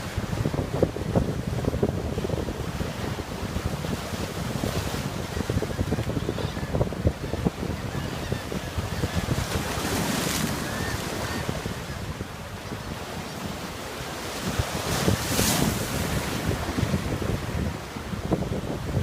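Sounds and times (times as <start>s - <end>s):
ocean surf washing: 0.0s - 19.0s
waves breaking: 0.0s - 19.0s
wind buffeting microphone: 0.0s - 19.0s.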